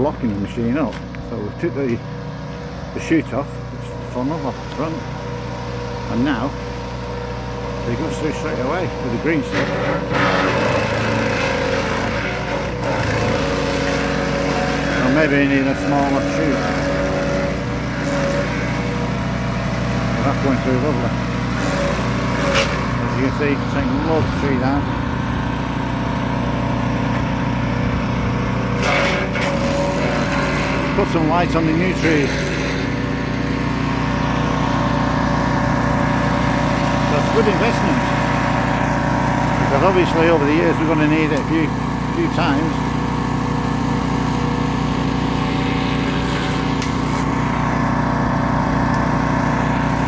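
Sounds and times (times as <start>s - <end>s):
wood chipper chipping branches: 0.0s - 50.0s.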